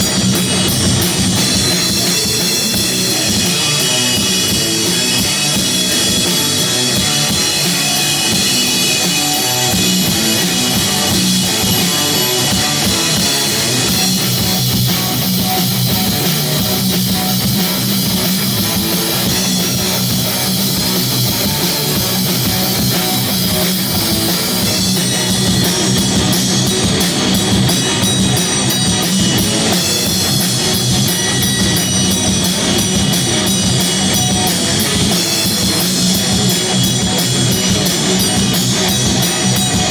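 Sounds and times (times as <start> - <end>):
fast cymbal strokes: 0.0 - 39.9
live metal band playing: 0.0 - 39.9.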